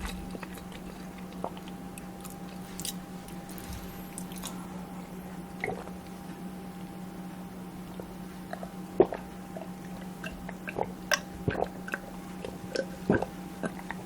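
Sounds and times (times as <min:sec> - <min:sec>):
person chewing: 0:00.0 - 0:04.7
steady low hum: 0:00.0 - 0:14.0.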